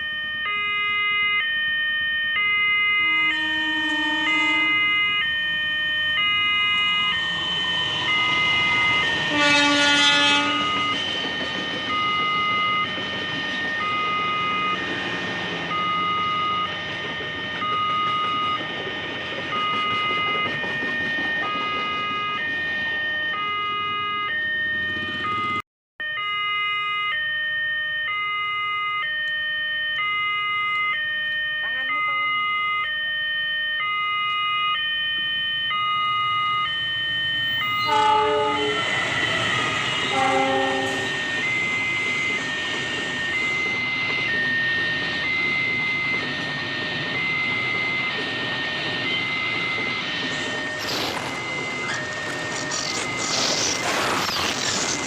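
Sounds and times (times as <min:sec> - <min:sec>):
level-crossing warning alarm: 0:00.0 - 0:55.0
locomotive horn: 0:02.7 - 0:05.2, 0:09.2 - 0:10.9, 0:37.8 - 0:41.4
passing train rumble: 0:03.0 - 0:25.6, 0:36.8 - 0:55.0.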